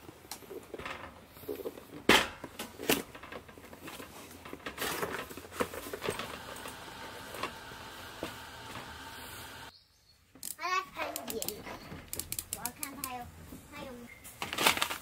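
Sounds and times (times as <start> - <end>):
rustling: 0.0 - 9.7, 13.4 - 15.0.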